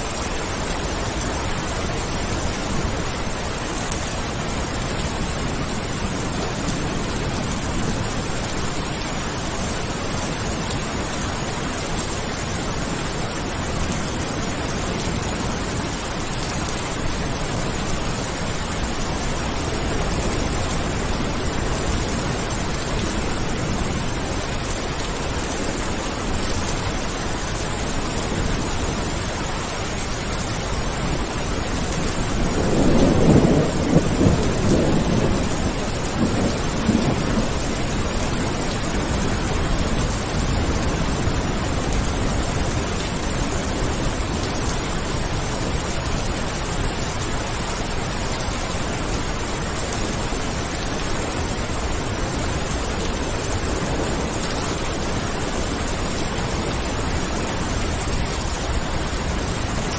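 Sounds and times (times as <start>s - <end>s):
heavy rain: 0.0s - 59.9s
thunder rumble: 31.1s - 47.0s.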